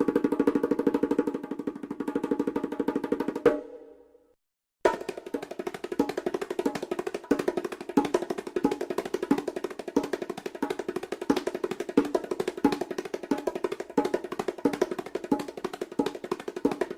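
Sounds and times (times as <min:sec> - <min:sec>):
percussion loop: 0:00.0 - 0:03.8, 0:04.8 - 0:16.9.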